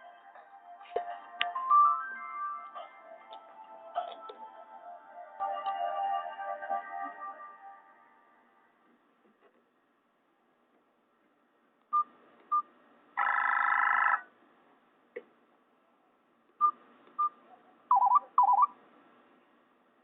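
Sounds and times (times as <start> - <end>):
electronic ringtone beeps: 1.5 - 2.8, 17.9 - 18.7.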